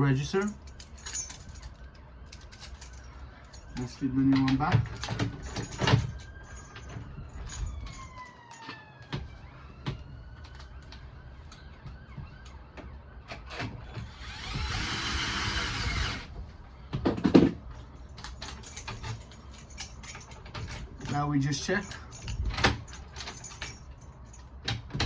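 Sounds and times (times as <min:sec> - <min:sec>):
power screwdriver whirring: 0:14.0 - 0:16.3.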